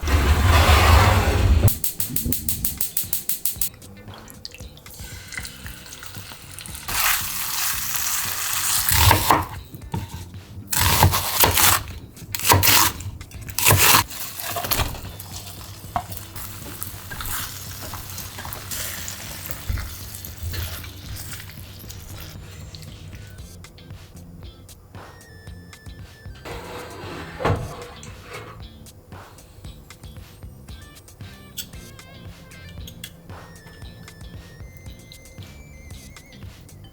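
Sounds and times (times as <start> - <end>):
food sizzling in a pan: 4.6 - 9.6, 13.6 - 23.3
utensils stirring against pan: 4.9 - 23.4, 26.5 - 28.6.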